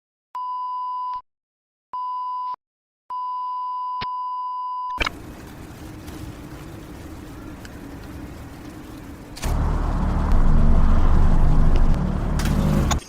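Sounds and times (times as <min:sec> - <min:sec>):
noisy rumble with low hum: 0:05.0 - 0:13.0.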